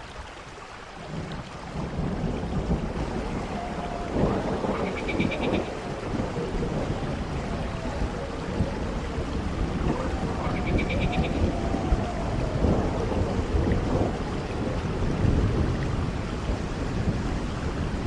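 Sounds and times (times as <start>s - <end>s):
low storm rumble: 0.0s - 18.0s
rain-like hiss: 0.0s - 18.0s
faint wavering whistle: 9.9s - 12.4s.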